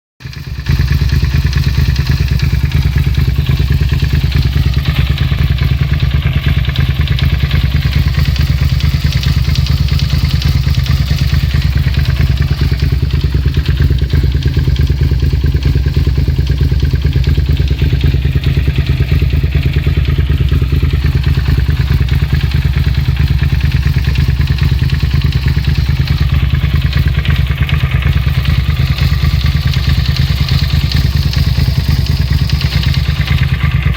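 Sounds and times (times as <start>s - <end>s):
motorcycle engine idling: 0.2s - 33.9s
engine knocking tap: 0.6s - 33.9s.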